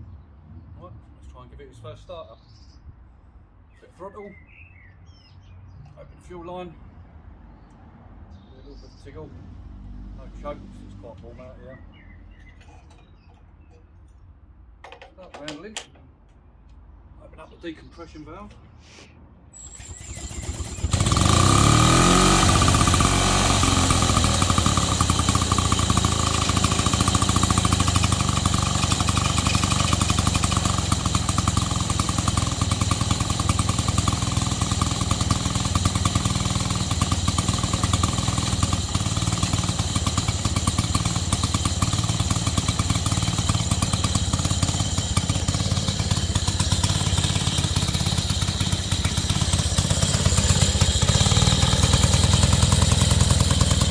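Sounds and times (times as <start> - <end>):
lawnmower engine starting and running: 19.5 - 53.9.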